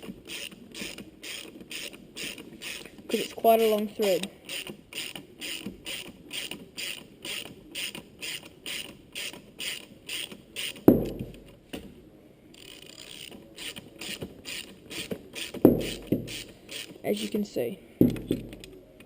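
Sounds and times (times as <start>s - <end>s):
ratchet wrench clicking: 0.3s - 2.9s, 4.2s - 10.8s, 12.5s - 17.3s.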